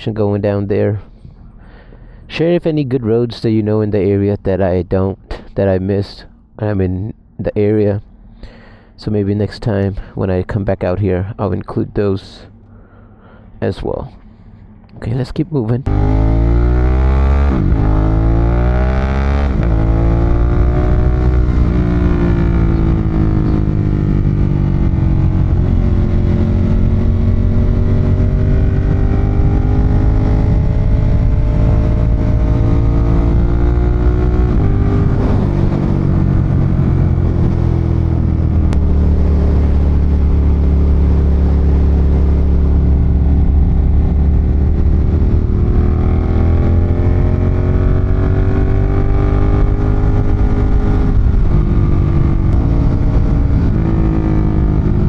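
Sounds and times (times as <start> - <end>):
motorcycle engine accelerating: 15.8 - 55.0.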